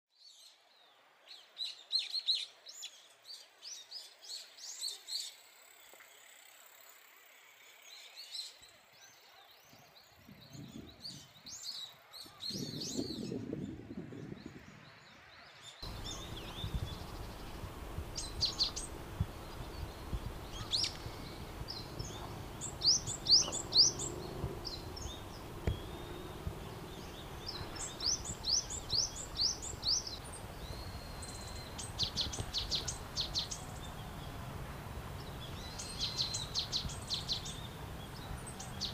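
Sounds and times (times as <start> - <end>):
birds calling shrilly: 15.7 - 38.9
steady background noise: 15.8 - 38.9
low rumble: 15.9 - 31.6.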